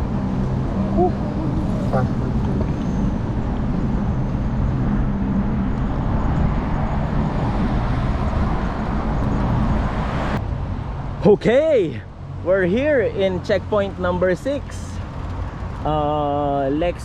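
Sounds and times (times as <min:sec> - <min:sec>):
wind noise on microphone: 0:00.0 - 0:11.2
tyre and road noise: 0:00.0 - 0:17.0.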